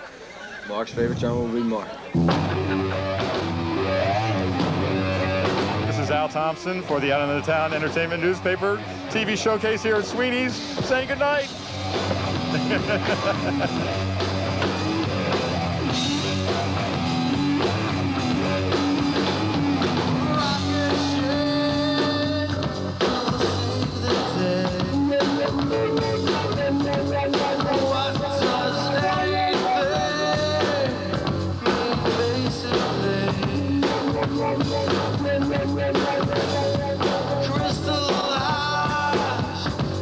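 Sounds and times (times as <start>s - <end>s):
rock band playing: 2.2s - 40.0s.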